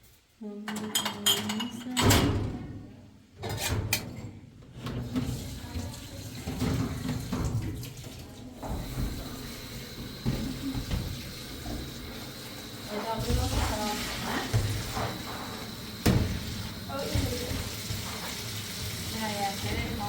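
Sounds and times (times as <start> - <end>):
dishes clinking: 0.7 - 2.4
tap water running into sink: 5.0 - 20.0.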